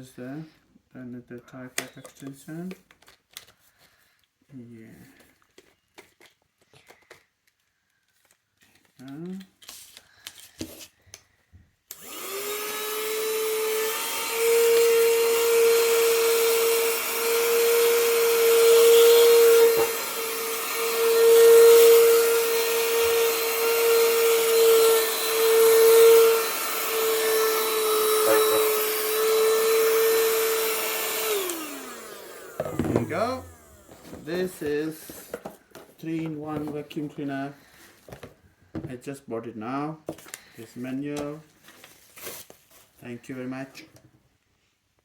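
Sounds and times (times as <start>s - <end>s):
vacuum cleaner motor whine: 11.9s - 35.4s.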